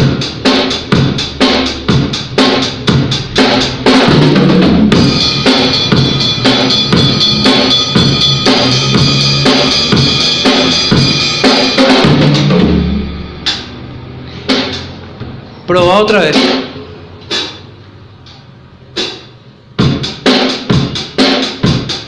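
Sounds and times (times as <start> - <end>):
bass drum and snare beat: 0.0 - 13.8, 14.5 - 17.7, 18.9 - 22.0
cymbals ringing: 4.9 - 17.7.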